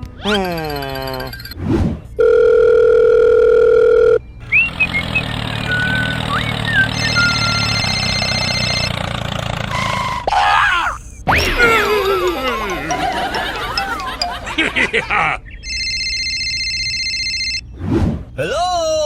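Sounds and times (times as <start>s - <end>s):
whistling and sliding sound effects: 4.5s - 7.8s
steady electronic beep: 7.0s - 8.9s.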